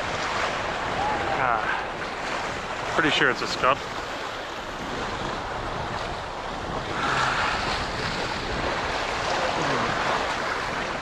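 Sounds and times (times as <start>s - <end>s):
ocean surf washing: 0.0s - 11.0s
wind noise on microphone: 3.8s - 11.0s.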